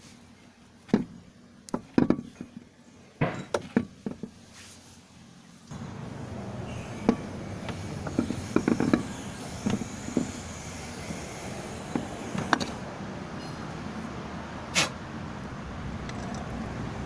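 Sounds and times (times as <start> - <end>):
car engine rumbling: 5.7 - 17.0.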